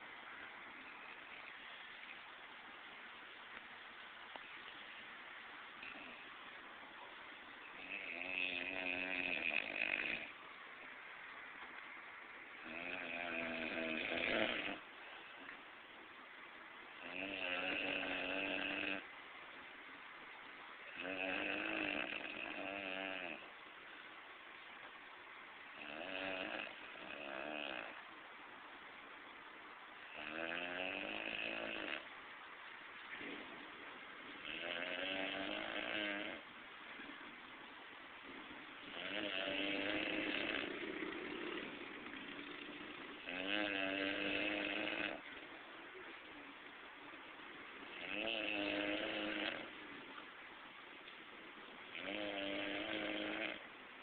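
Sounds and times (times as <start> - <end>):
quiet breathing: 5.7 - 11.8, 12.5 - 15.9
person snoring: 5.8 - 6.2, 7.8 - 10.3, 12.6 - 14.8, 17.0 - 19.0, 21.0 - 23.5, 25.8 - 28.0, 30.2 - 32.1, 34.4 - 36.4, 38.8 - 45.2, 48.0 - 49.7, 51.9 - 53.6.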